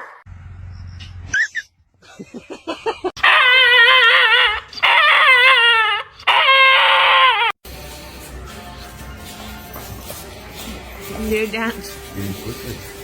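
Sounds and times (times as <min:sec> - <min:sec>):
dog howling: 0:03.2 - 0:07.6
dog yelping and whining: 0:03.2 - 0:07.6.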